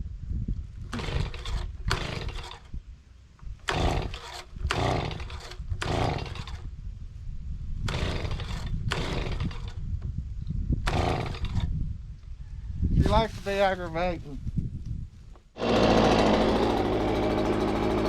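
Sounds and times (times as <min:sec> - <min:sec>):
two-stroke engine sputtering: 0:00.9 - 0:02.7, 0:03.6 - 0:06.7, 0:07.8 - 0:09.8, 0:10.8 - 0:11.7, 0:15.6 - 0:18.0.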